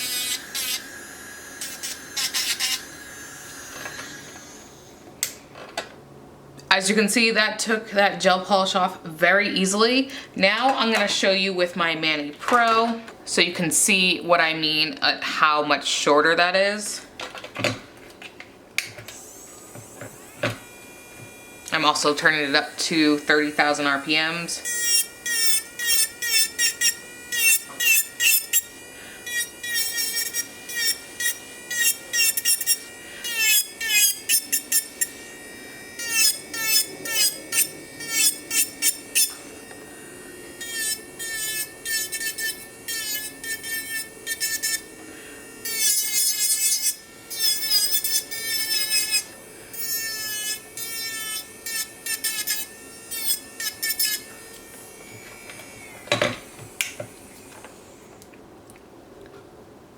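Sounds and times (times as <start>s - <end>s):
drill bit filing nail: 0.0s - 4.9s, 19.1s - 56.2s
electric nail drill whining: 0.0s - 5.4s, 19.1s - 58.2s.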